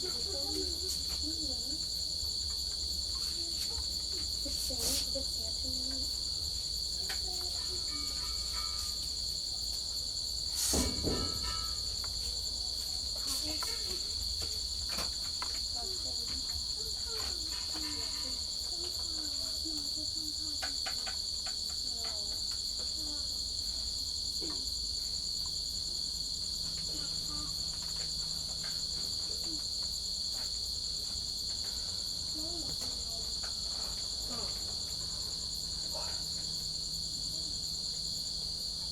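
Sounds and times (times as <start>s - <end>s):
crickets trilling: 0.0s - 38.9s
sharp knock: 10.6s - 11.8s.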